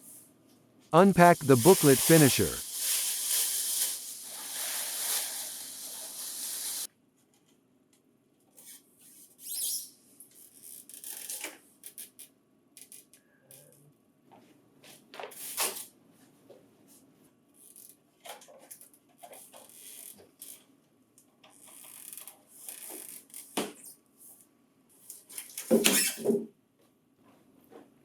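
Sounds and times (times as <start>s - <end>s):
steady hiss: 1.0s - 6.9s
packing material rustling: 2.6s - 6.9s.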